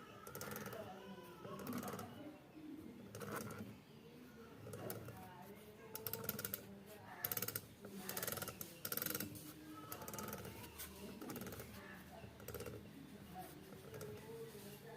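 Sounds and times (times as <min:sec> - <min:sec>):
ratchet-like clicking: 0:07.2 - 0:09.4.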